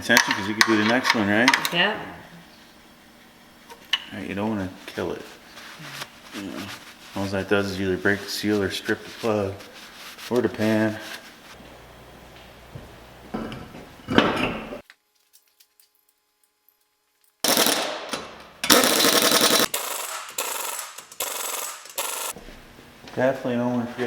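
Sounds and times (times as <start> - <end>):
socket ratchet clicking: 18.6 - 22.4.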